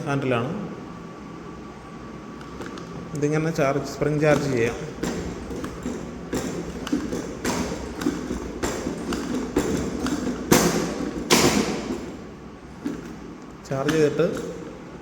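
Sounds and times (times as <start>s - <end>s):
breaker mechanism clicking and knocking: 2.4s - 15.0s
loud clunks: 4.2s - 15.0s.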